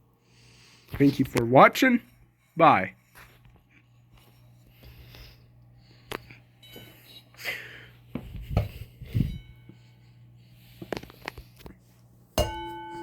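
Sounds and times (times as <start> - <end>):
fire alarm bell ringing: 12.4 - 13.0.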